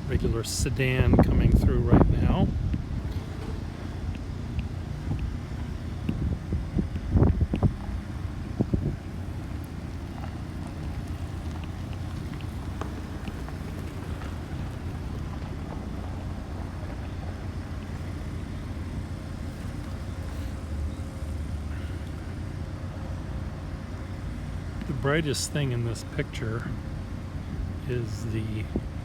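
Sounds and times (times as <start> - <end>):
wind on microphone: 0.0 - 16.9
construction machinery: 0.0 - 29.0
street traffic rumble: 0.0 - 29.0.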